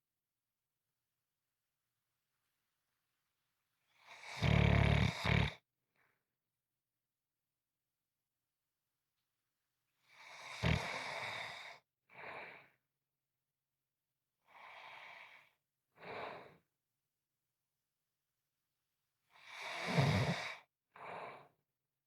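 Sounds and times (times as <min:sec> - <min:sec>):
person snoring: 0:04.2 - 0:05.6.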